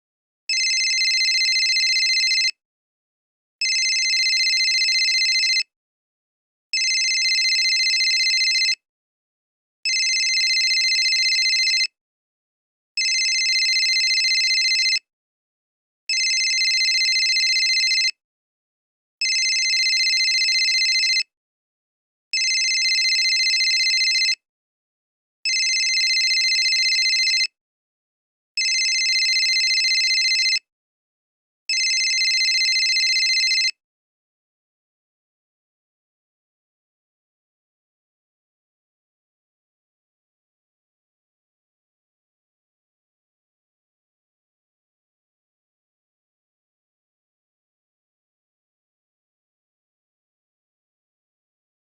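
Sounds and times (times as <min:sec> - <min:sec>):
electronic phone ring tone: 0:00.5 - 0:02.5, 0:03.6 - 0:05.6, 0:06.8 - 0:08.8, 0:09.9 - 0:11.9, 0:13.0 - 0:15.0, 0:16.1 - 0:18.1, 0:19.2 - 0:21.2, 0:22.4 - 0:24.4, 0:25.5 - 0:27.5, 0:28.6 - 0:30.6, 0:31.7 - 0:33.8.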